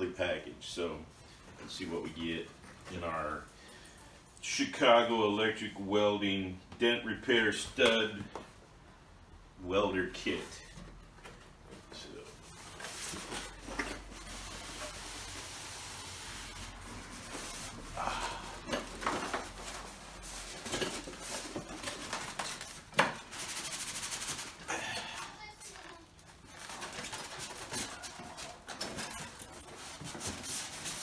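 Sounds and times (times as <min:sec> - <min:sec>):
packaging rustling: 0:16.3 - 0:24.7, 0:25.4 - 0:31.0.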